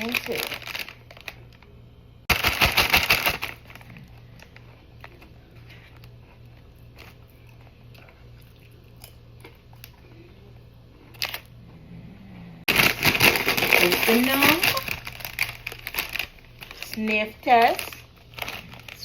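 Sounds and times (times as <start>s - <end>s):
chip bag crinkling: 0.0s - 6.2s, 11.1s - 11.5s, 12.7s - 19.0s
low steady hum: 0.0s - 19.0s.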